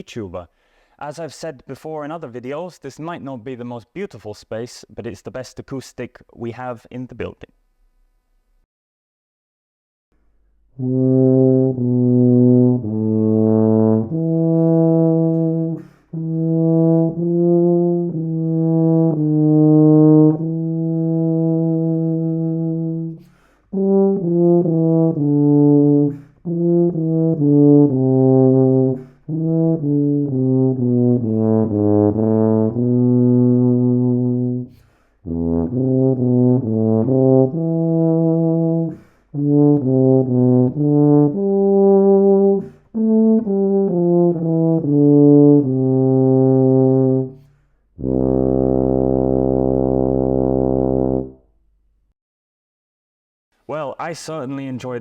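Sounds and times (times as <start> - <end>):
solo tuba melody: 10.6 - 51.5.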